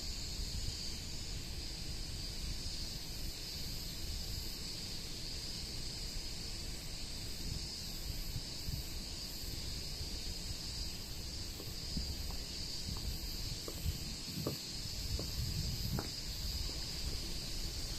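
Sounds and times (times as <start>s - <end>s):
insects chorus: 0.0s - 17.9s
wind rumbling on microphone: 6.3s - 17.9s.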